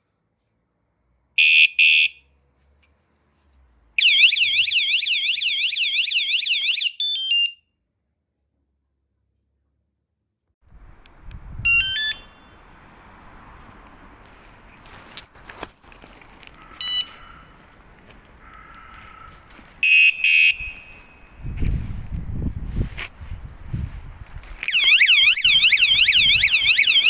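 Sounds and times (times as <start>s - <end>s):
motorcycle alarm electronic beeps: 4.0s - 7.6s, 11.6s - 12.6s, 16.8s - 17.2s, 19.8s - 21.4s, 24.7s - 27.0s.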